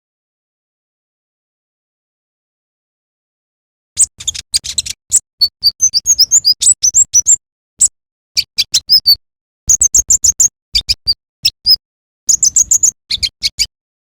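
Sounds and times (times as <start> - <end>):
bird chirping and whistling: 4.0 - 13.7.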